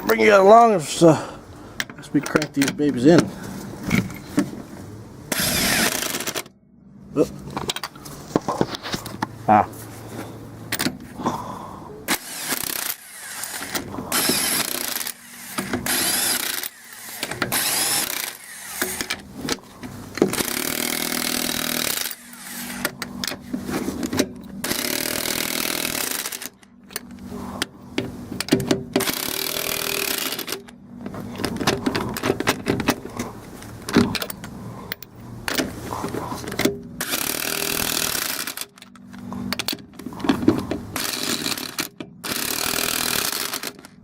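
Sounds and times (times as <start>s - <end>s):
impact wrench bursts: 5.3s - 6.5s, 12.1s - 19.2s, 20.3s - 23.0s, 24.6s - 26.6s, 29.0s - 30.7s, 37.0s - 38.8s, 41.0s - 43.9s.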